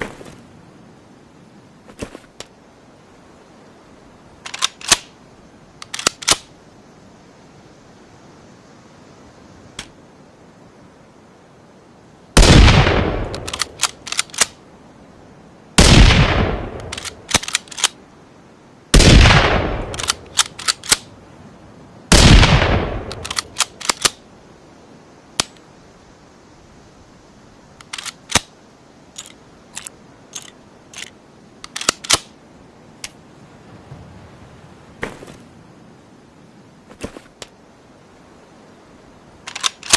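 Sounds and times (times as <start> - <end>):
rifle shots: 12.4 - 13.8, 15.8 - 17.6, 19.0 - 21.0, 22.1 - 24.1
sharp clicks: 13.2 - 14.6, 16.8 - 18.0, 19.8 - 21.1, 23.0 - 24.2, 27.8 - 28.5, 29.2 - 32.3, 39.5 - 39.9.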